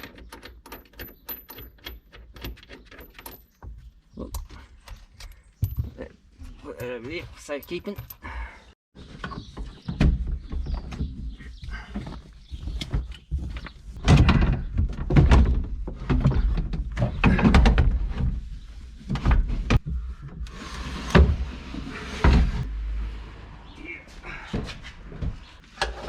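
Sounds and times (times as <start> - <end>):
parts thudding and clattering: 0.0 - 8.5, 12.7 - 20.1.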